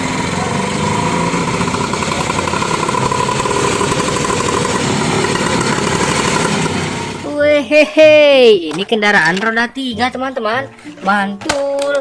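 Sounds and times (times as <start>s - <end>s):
three-wheeler engine puttering: 0.0s - 7.6s.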